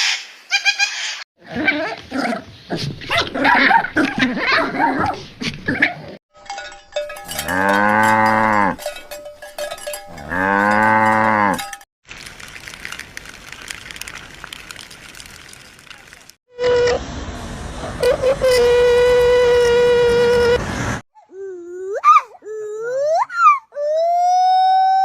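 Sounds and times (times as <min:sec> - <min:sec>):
cow mooing: 0:07.4 - 0:08.9, 0:10.1 - 0:11.6.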